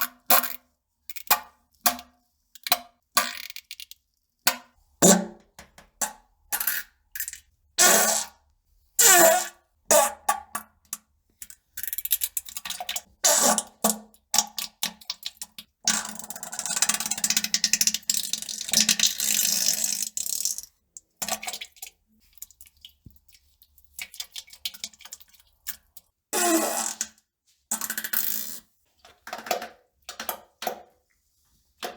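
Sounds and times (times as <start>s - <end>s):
fart sounds: 26.4s - 27.1s.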